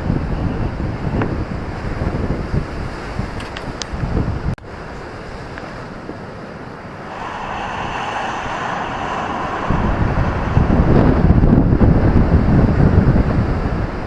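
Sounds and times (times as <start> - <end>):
wind on microphone: 0.0 - 4.6, 7.0 - 14.0
deep surf rumble: 6.9 - 14.0
wave breaking with hiss: 7.0 - 12.8.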